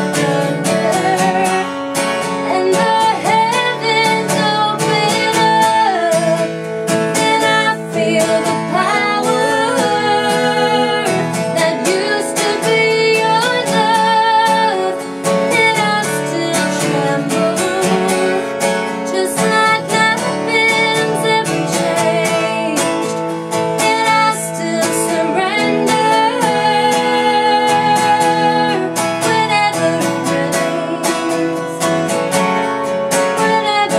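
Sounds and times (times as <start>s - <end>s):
acoustic guitar: 0.0s - 33.9s
woman singing: 0.0s - 33.9s.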